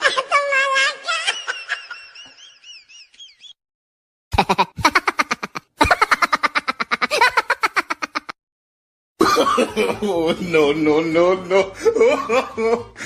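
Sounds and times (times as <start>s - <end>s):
person laughing hard: 4.4s - 8.4s, 11.6s - 13.0s.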